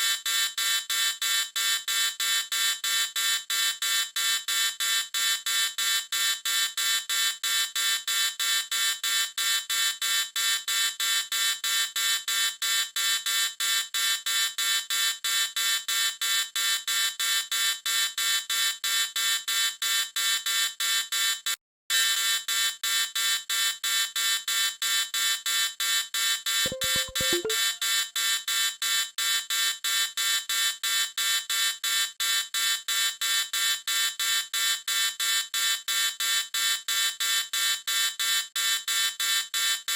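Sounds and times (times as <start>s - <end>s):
shrill electronic alarm beeping: 26.7s - 27.8s.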